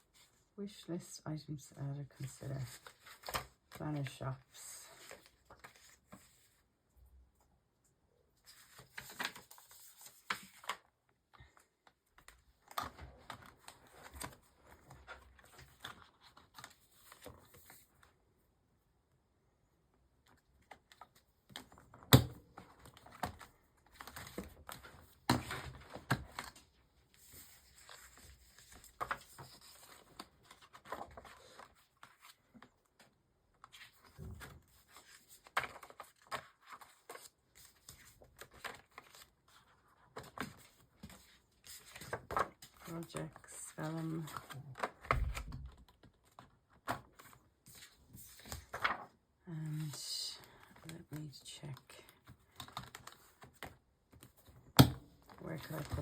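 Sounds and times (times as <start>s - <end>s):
paper pages rustling and sliding: 2.2s - 6.7s, 8.4s - 10.9s, 12.2s - 18.1s, 20.3s - 49.2s, 52.2s - 54.6s.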